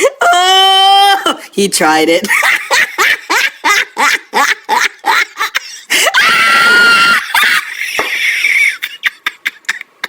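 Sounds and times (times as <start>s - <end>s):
loud high scream: 6.0s - 7.7s.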